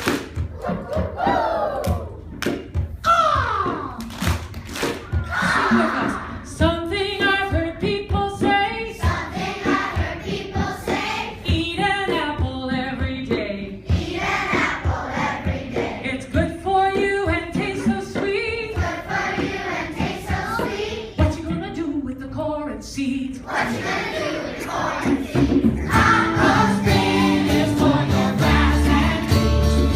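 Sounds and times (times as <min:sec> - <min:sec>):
group singing in harmony: 0:09.0 - 0:11.4, 0:13.8 - 0:16.1, 0:18.7 - 0:21.2, 0:23.4 - 0:29.9.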